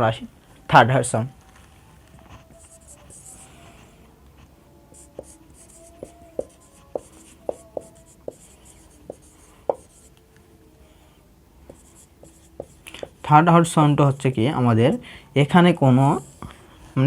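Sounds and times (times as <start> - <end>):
pen scratching on paper: 2.5 - 4.0, 4.9 - 10.1, 11.7 - 13.3.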